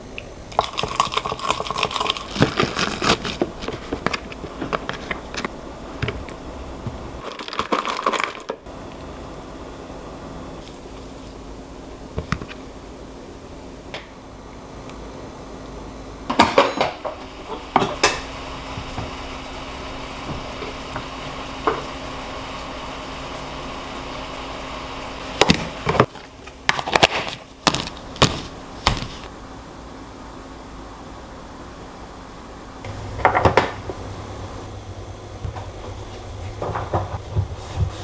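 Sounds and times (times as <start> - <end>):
low hum: 8.7 - 26.0, 32.8 - 38.0
kitchenware clacking: 16.3 - 19.2, 32.9 - 34.0.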